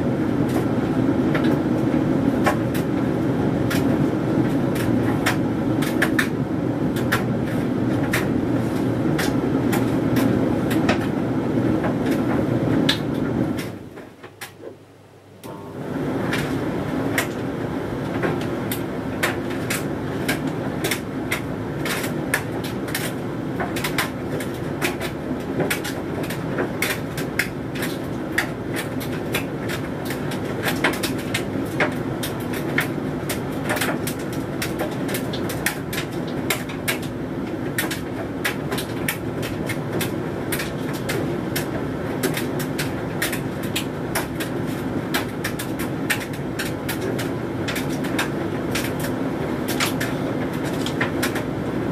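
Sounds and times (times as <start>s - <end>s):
tumble dryer motor hum: 0.0s - 14.3s, 15.2s - 51.9s
clicks and knocks of tumbling load: 18.1s - 51.5s.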